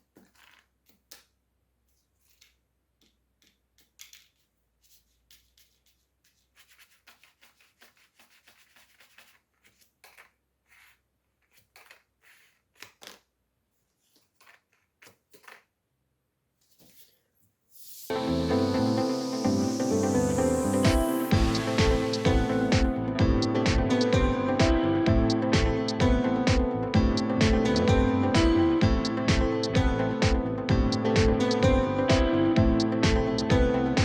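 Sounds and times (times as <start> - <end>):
paper rubbing and creasing: 4.2 - 15.7, 16.6 - 18.1.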